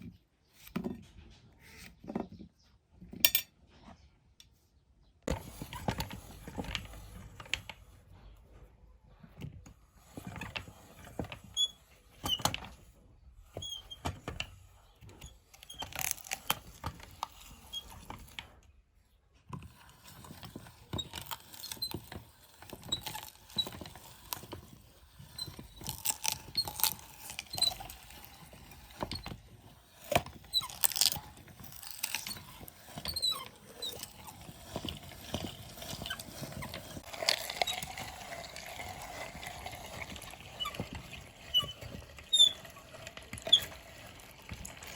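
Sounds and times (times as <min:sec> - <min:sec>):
meat grinder crunching pumpkin: 0:15.2 - 0:18.6, 0:19.6 - 0:44.9
high squeaks: 0:29.9 - 0:38.2, 0:40.4 - 0:43.8.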